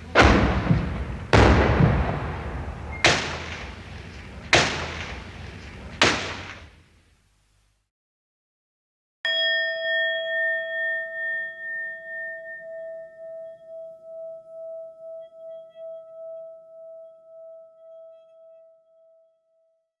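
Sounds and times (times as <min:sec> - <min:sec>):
metal chime ringing: 0:09.3 - 0:14.5.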